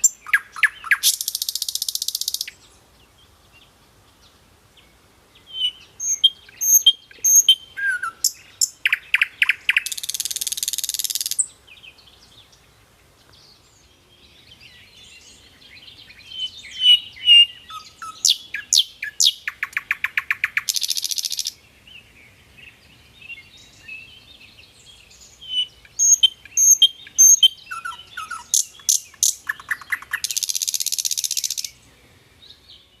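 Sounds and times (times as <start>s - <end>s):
nightingale singing: 0.0s - 33.0s.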